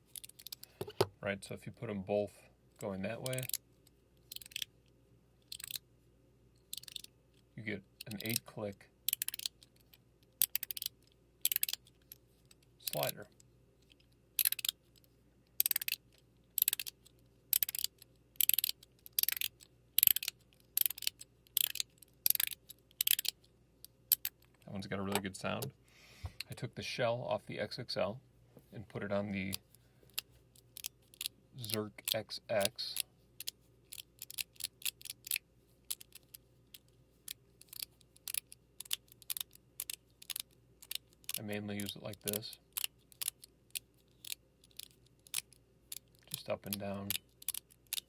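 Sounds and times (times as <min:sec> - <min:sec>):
fidget slider clicking: 0:05.5 - 0:05.8, 0:06.7 - 0:07.1, 0:09.1 - 0:09.6, 0:10.4 - 0:11.8, 0:14.4 - 0:14.8, 0:15.6 - 0:16.0, 0:16.6 - 0:23.4, 0:37.6 - 0:43.4, 0:44.2 - 0:48.0.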